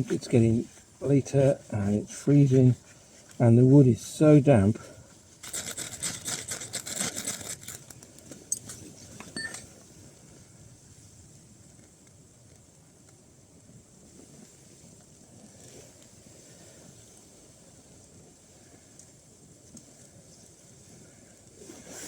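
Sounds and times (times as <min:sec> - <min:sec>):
faint outdoor background: 0:00.0 - 0:22.0.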